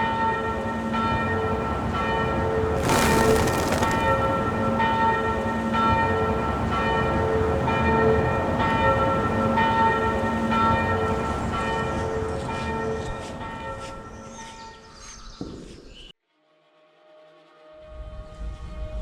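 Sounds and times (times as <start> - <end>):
brief rushing noise: 2.8 - 4.4.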